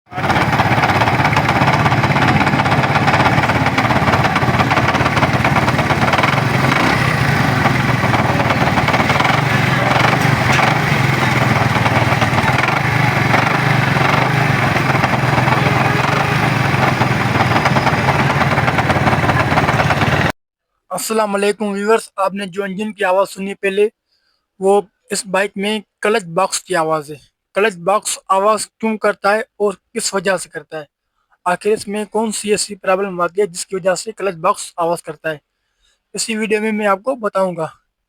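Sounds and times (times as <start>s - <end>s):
clutch rattling: 0.1s - 20.3s
motorcycle engine running: 0.1s - 20.3s.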